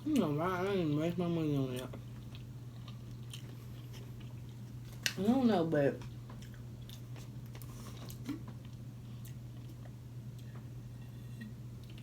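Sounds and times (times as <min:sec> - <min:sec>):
person chewing: 0:01.7 - 0:05.1, 0:06.4 - 0:10.6.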